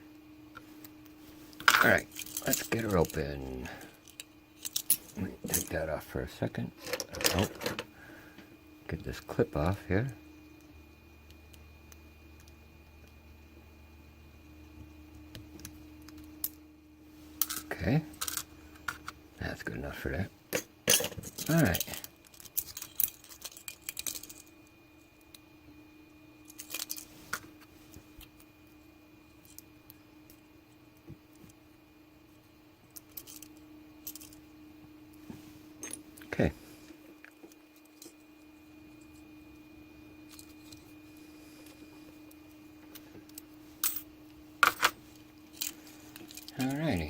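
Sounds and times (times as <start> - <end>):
small metal lock parts clicking: 20.6 - 24.5.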